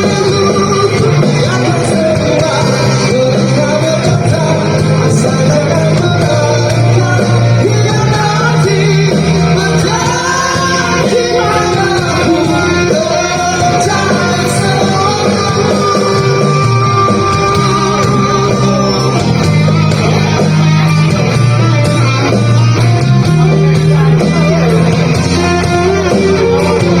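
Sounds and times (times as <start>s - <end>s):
rock song with vocals: 0.0s - 27.0s.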